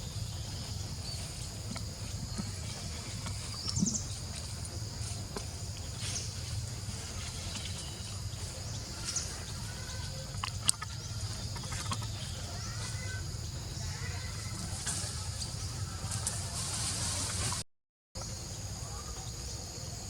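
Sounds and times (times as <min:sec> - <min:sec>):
insects buzzing: 0:00.0 - 0:17.6.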